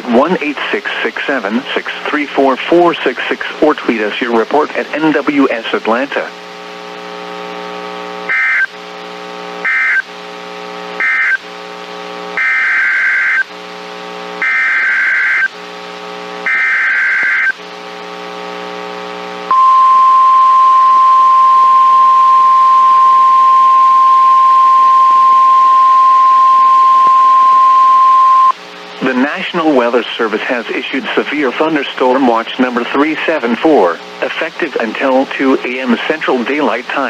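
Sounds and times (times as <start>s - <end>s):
low buzzing tone: 6.5s - 28.8s
alert data bursts: 12.4s - 13.4s, 14.4s - 15.5s, 16.5s - 17.6s, 19.5s - 28.6s.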